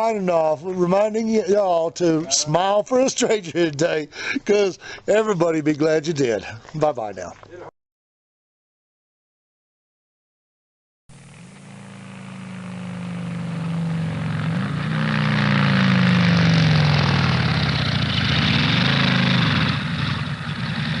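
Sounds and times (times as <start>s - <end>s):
pickup truck engine running: 11.1s - 21.0s.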